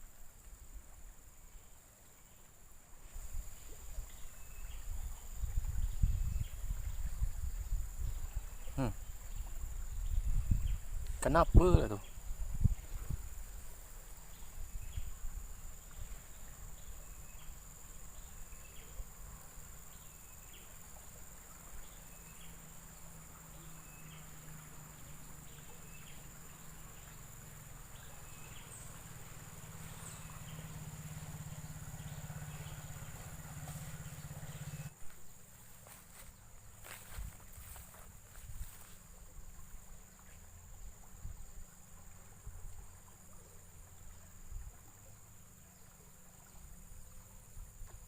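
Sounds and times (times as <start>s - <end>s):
short insect chirp: 0.0s - 48.0s
high-pitched insect drone: 3.2s - 34.9s, 35.6s - 39.0s
low hum: 22.9s - 44.4s.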